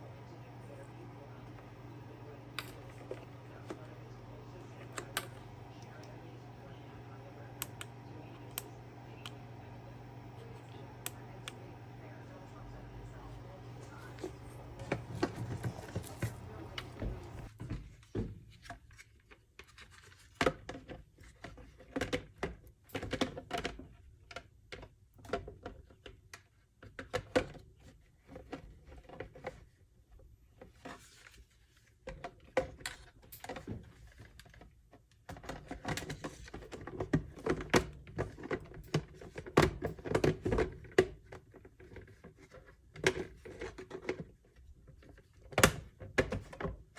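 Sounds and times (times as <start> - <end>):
steady low hum: 0.0 - 17.5.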